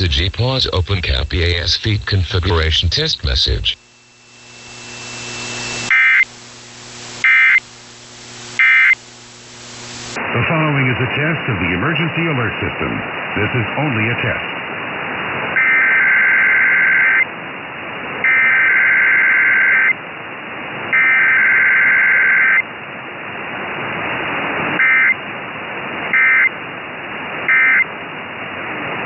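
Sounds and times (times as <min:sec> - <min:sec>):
harsh warbling data bursts: 0:00.0 - 0:10.2
receiver static hiss: 0:00.0 - 0:29.0.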